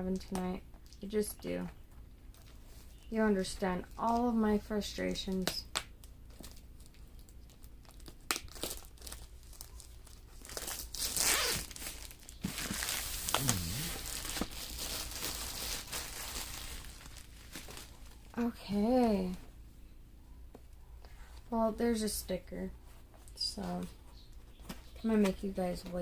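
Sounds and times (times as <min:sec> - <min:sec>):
packaging crinkling and tearing: 0:05.4 - 0:18.3.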